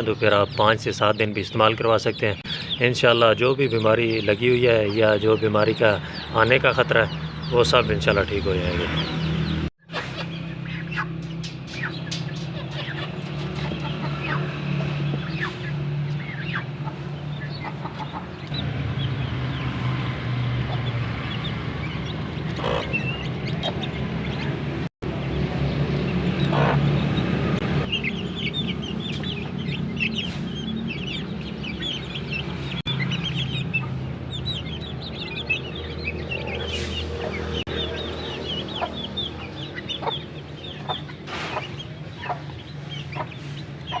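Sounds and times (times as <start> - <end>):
chicks peeping: 0.0 - 19.8, 20.6 - 44.0
chickens clucking: 9.9 - 18.6, 20.6 - 24.6, 26.0 - 44.0.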